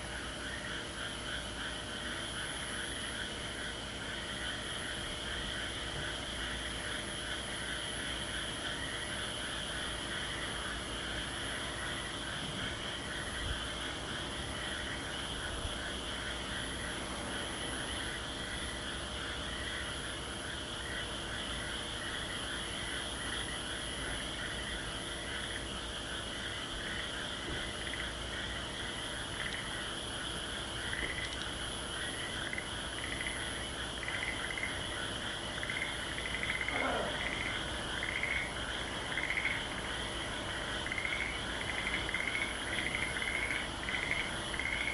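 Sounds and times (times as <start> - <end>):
frogs croaking: 0.0 - 44.9
loud rhythmic frog croaks: 0.0 - 44.9.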